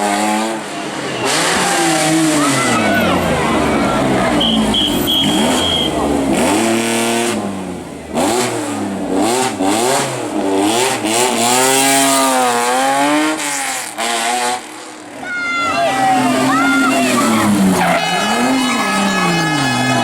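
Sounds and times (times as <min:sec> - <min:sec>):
rally car engine revving: 0:00.0 - 0:20.0
short high whistle tone: 0:04.4 - 0:06.0.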